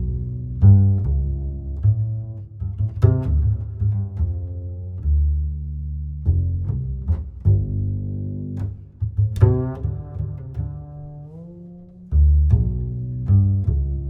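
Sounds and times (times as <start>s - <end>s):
deep held bass notes: 0.0s - 14.0s.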